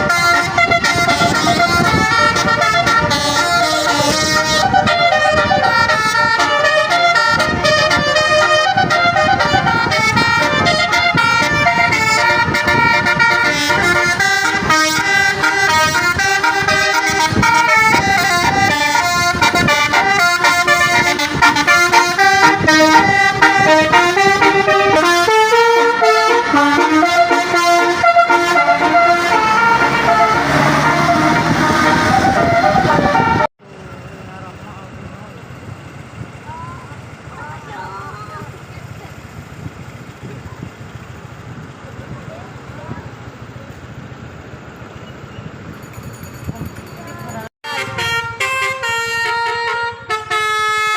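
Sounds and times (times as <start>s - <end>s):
multi-tone bus horn melody: 0.0s - 33.6s, 47.6s - 50.9s
bus rumble: 0.0s - 50.9s.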